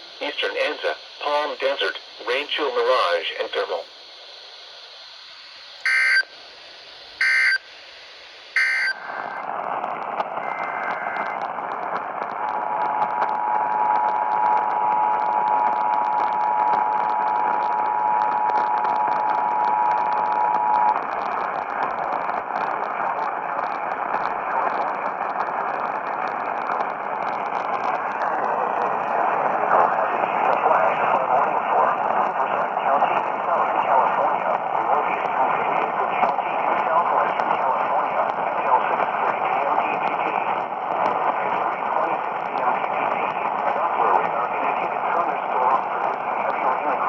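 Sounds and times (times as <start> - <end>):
radio static hiss: 0.0 - 47.0
electronic data bursts: 5.8 - 6.3, 7.2 - 7.6, 8.6 - 9.4
two-tone attention signal: 5.9 - 6.2, 7.2 - 7.6, 8.6 - 9.4.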